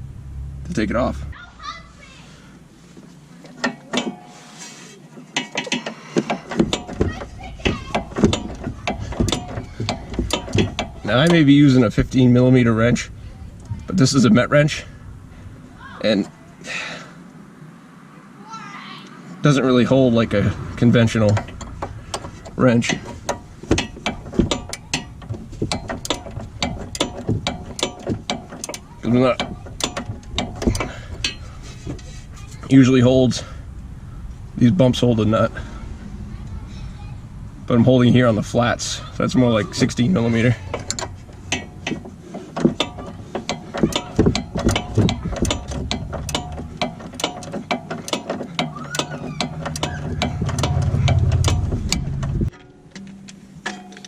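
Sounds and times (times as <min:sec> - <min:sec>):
low steady hum: 0:00.0 - 0:17.8, 0:19.6 - 0:54.0
wrench clicking on nut: 0:21.3 - 0:31.4, 0:40.7 - 0:52.3.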